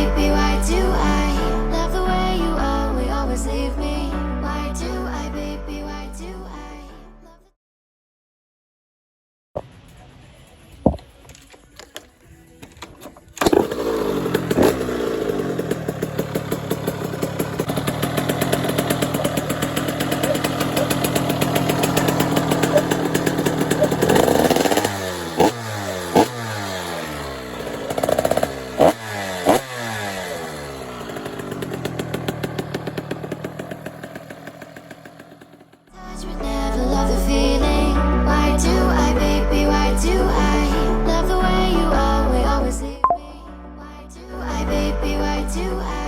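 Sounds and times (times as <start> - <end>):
motorcycle engine revving: 13.4 - 35.9.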